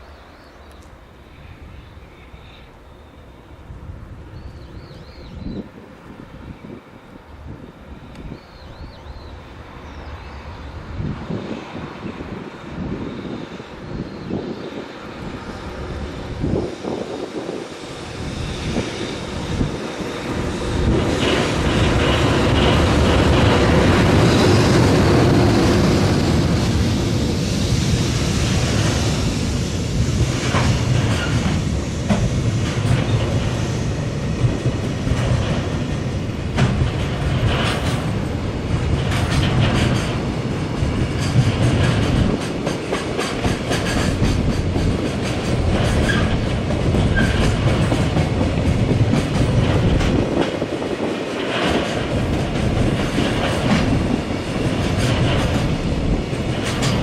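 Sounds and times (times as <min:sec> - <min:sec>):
freight train passing: 0:00.0 - 0:57.0
wheels clicking over rail joints: 0:36.5 - 0:57.0.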